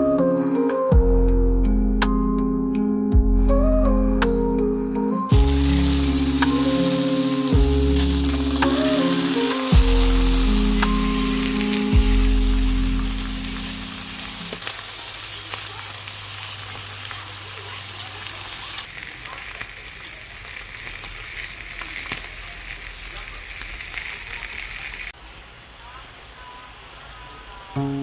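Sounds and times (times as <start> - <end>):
background music: 0.0 - 14.5
food sizzling in a pan: 5.3 - 28.0.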